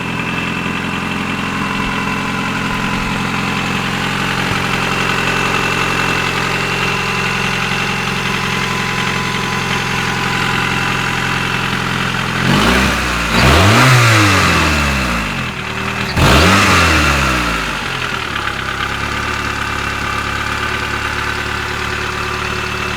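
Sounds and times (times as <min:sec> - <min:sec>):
exhaust noise: 0:00.0 - 0:06.2, 0:10.5 - 0:19.5
engine idling and revving: 0:00.0 - 0:22.9.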